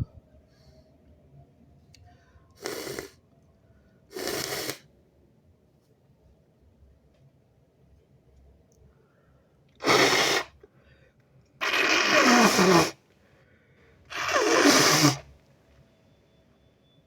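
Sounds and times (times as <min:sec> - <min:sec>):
nose blowing: 0:02.6 - 0:03.2, 0:04.1 - 0:04.8, 0:09.8 - 0:10.6, 0:11.6 - 0:13.0, 0:14.1 - 0:15.3.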